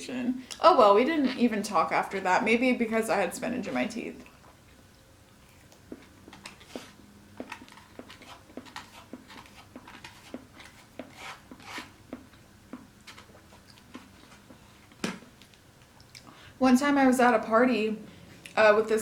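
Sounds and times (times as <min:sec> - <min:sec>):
chewing mouth sounds: 0:13.0 - 0:14.6.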